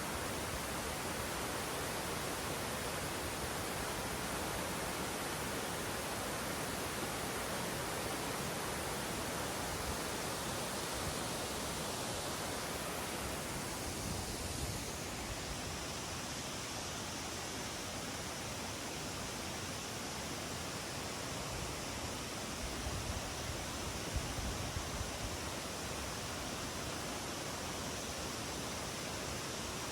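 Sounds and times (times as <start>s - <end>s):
waterfall roar: 0.0s - 22.4s.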